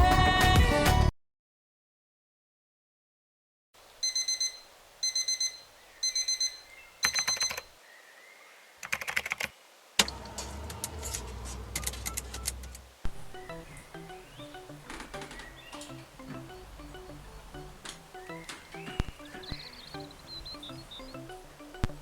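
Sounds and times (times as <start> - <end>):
alarm clock beeping: 4.0 - 7.7
clicks and rustling of handling: 14.8 - 16.5, 17.8 - 19.2.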